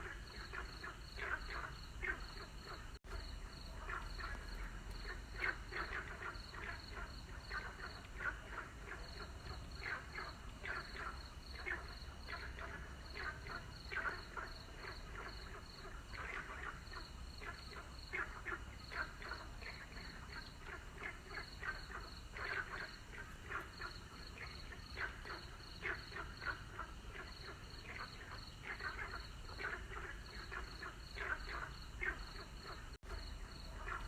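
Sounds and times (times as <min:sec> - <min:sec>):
frogs croaking: 0:00.0 - 0:34.0.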